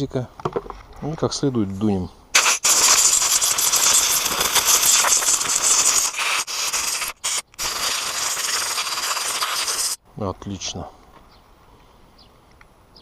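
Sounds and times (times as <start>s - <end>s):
compressed air hissing: 2.4s - 10.0s.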